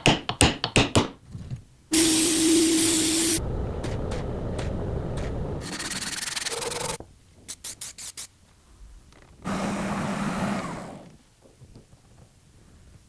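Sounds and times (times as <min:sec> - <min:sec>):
low hum: 0:01.9 - 0:07.0.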